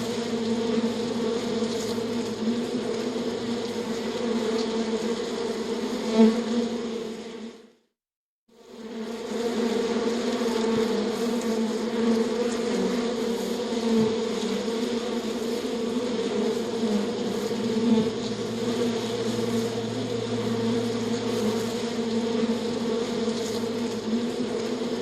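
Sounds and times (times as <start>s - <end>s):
insects buzzing: 0.0s - 7.6s, 8.6s - 25.0s
lower hum: 16.6s - 24.4s.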